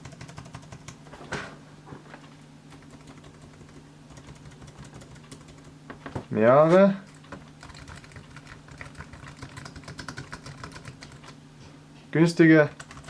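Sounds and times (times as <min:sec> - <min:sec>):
keyboard typing clicks: 0:02.8 - 0:05.7, 0:07.1 - 0:11.4.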